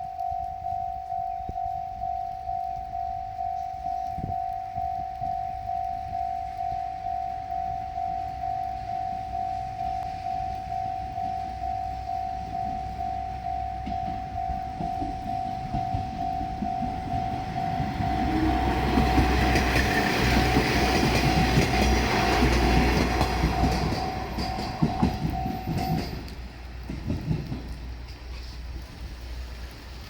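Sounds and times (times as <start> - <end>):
level crossing warning bell: 0.0 - 27.3
diesel train rumbling: 6.4 - 30.0
train wheels clacking over rail joints: 13.8 - 28.7.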